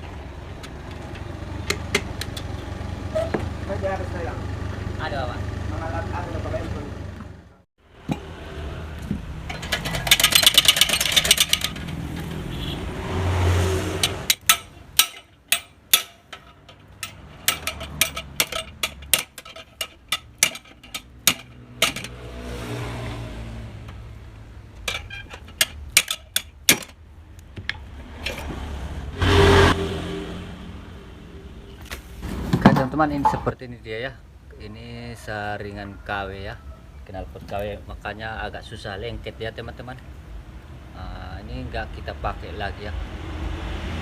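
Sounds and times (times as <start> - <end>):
hammer striking metal: 13.9 - 22.2, 24.9 - 27.0.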